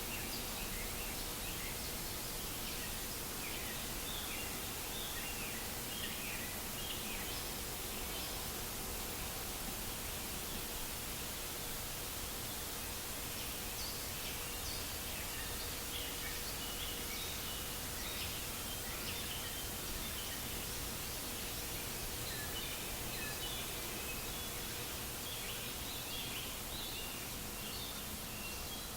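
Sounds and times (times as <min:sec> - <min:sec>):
small birds chirping: 0:00.0 - 0:28.9
white-noise hiss: 0:00.0 - 0:28.9.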